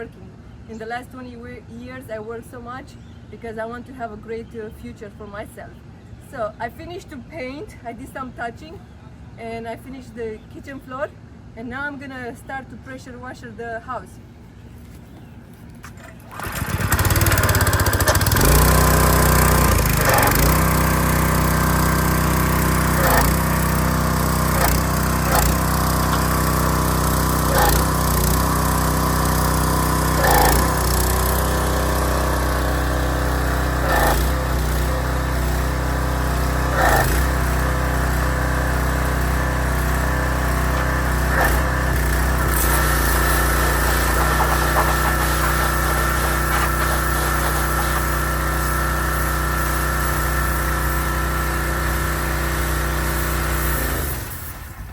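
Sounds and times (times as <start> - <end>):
small petrol engine running: 15.8 - 54.9.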